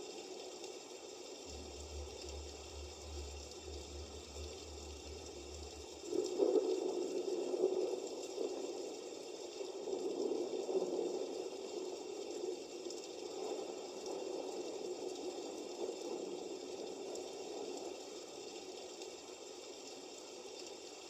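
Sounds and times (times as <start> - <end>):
bubbling running water: 1.4 - 6.8.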